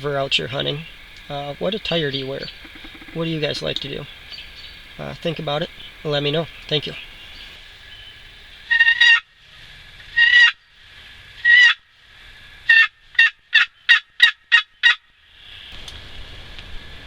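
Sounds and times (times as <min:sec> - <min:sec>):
turkey yelps: 0:02.1 - 0:04.9, 0:08.7 - 0:09.2, 0:10.2 - 0:10.6, 0:11.4 - 0:11.8, 0:12.7 - 0:15.0.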